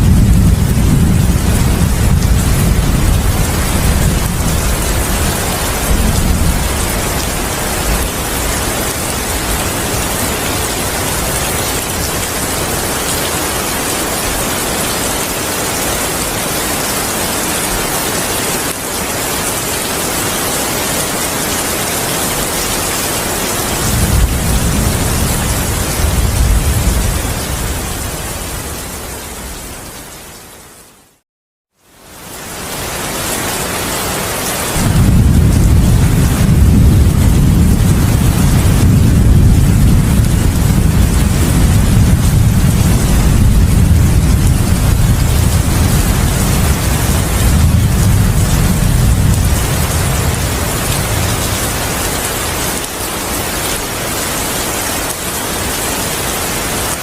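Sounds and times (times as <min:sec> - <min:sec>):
deep thunder rumbles: 0:00.0 - 0:12.6, 0:23.7 - 0:29.7, 0:34.8 - 0:52.1
heavy rain hiss: 0:31.9 - 0:57.0.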